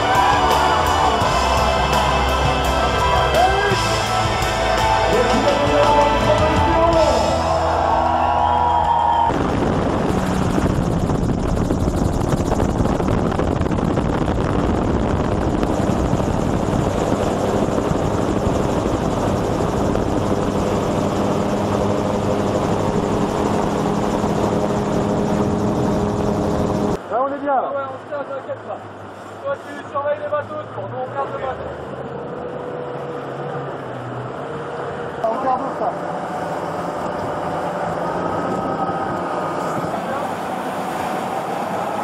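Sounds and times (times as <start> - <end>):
music: 0.0 - 9.3
loud rushing drone: 0.0 - 27.1, 30.5 - 42.0.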